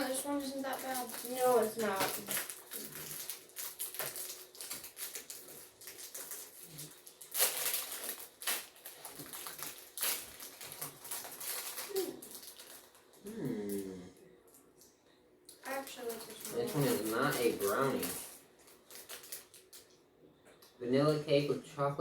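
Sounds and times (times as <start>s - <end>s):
plastic wrapper crinkling: 0.0s - 13.8s, 15.5s - 20.0s.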